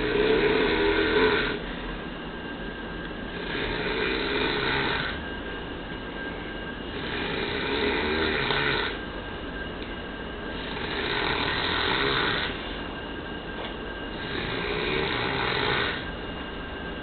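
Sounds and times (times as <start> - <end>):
man snoring: 0.0 - 1.6, 3.3 - 5.2, 6.9 - 9.0, 10.6 - 12.6, 14.2 - 16.1.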